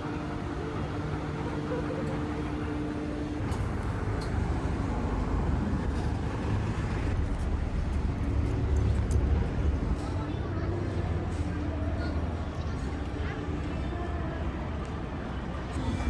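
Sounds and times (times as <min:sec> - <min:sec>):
low vehicle rumble: 0:00.0 - 0:11.8.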